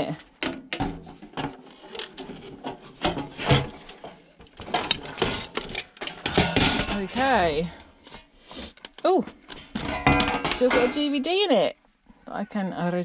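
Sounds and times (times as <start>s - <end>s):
plastic casing scraping and rubbing: 1.0s - 7.6s.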